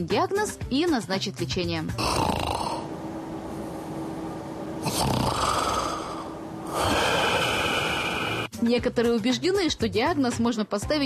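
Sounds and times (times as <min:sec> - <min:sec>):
person snoring: 0:02.0 - 0:02.9, 0:04.8 - 0:08.6.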